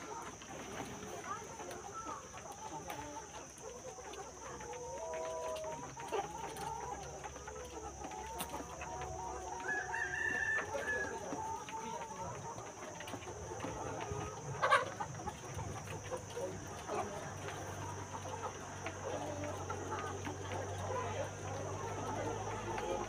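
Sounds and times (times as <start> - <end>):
chickens clucking: 0.0 - 23.0
rooster crowing: 9.6 - 11.4.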